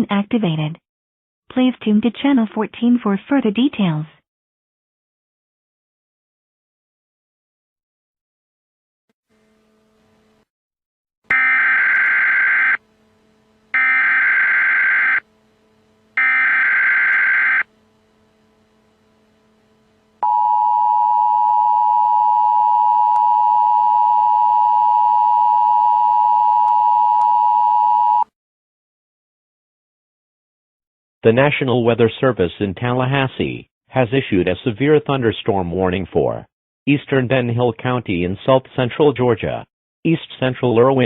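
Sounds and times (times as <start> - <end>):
two-tone attention signal: 11.3 - 12.8, 13.8 - 15.2, 16.2 - 17.7
faint hum: 11.4 - 28.2.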